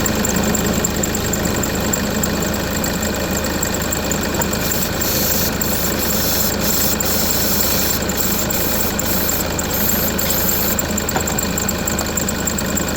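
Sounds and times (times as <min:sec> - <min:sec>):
diesel engine idling: 0:00.0 - 0:12.9
engine tensioner noise: 0:03.5 - 0:12.9.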